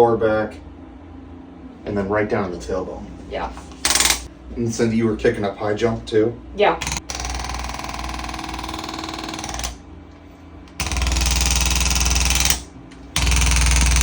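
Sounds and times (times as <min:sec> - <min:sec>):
rapid mechanical impulses: 0:06.8 - 0:09.8, 0:10.8 - 0:14.0.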